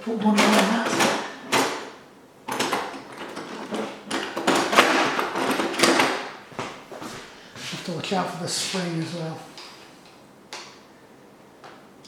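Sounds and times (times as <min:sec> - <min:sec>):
tools and parts clattering: 0:00.1 - 0:06.4.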